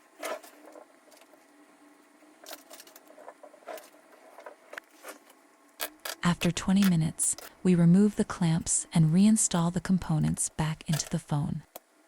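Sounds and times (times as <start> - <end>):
faint steady hum: 0.0 - 12.0
small parts clicking and rattling: 2.4 - 4.0.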